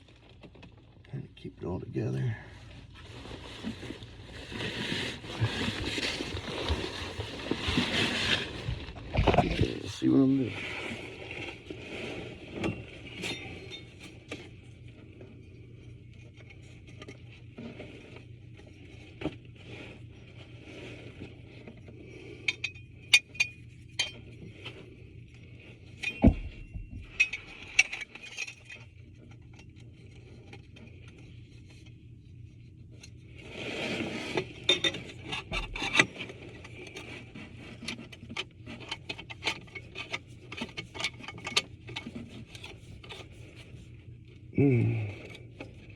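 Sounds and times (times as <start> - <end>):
faint low hum: 1.0 - 45.9
metal fittings clinking and scraping: 12.4 - 14.6, 21.9 - 30.2, 34.0 - 43.9.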